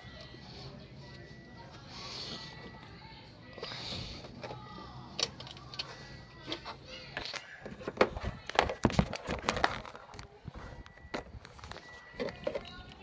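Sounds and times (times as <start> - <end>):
tools and parts clicking: 5.2 - 10.2.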